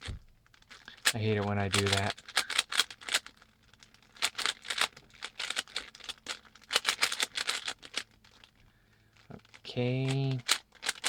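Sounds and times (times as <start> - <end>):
rubik's cube clicking: 0.7 - 3.3, 4.2 - 8.0, 10.4 - 11.0.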